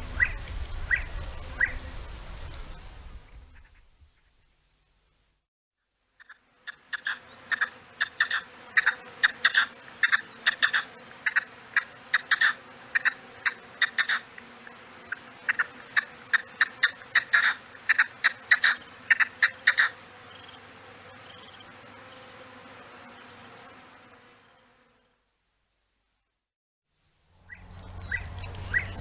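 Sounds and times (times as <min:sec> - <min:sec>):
faint background hiss: 0:00.0 - 0:22.4
game bird sharp calls: 0:15.5 - 0:20.0.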